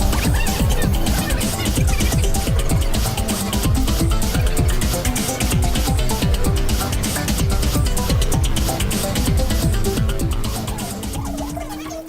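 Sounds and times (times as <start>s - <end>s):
kick drum: 0.0s - 10.6s
electronic dance music: 0.0s - 12.0s
hi-hats: 0.0s - 12.0s.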